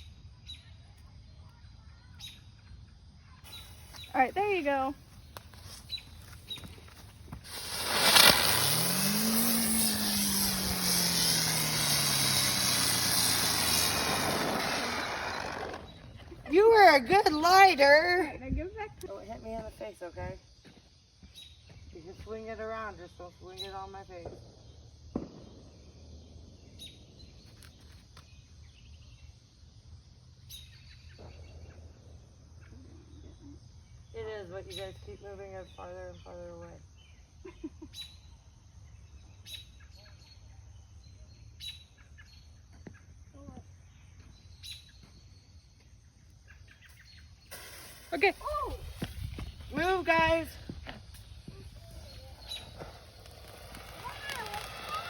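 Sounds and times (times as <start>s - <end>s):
handheld firework hissing: 3.4s - 17.8s, 47.4s - 55.0s.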